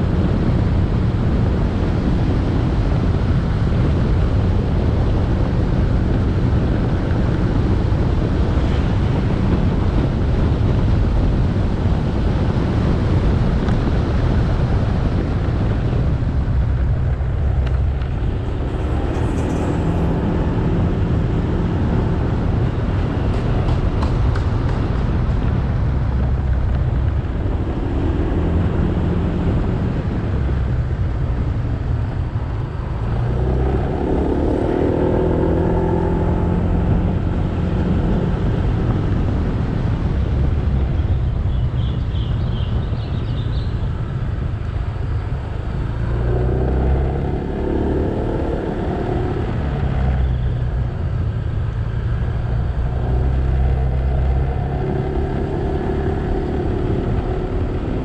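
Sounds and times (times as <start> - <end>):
road noise: 0.0 - 58.0
motorcycle engine revving: 12.9 - 31.2.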